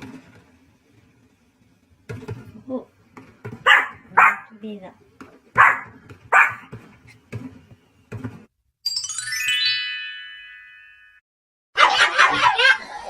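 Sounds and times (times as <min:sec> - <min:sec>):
dog barking: 0:03.6 - 0:04.5, 0:05.6 - 0:06.7
descending musical chime sweep: 0:08.9 - 0:11.2.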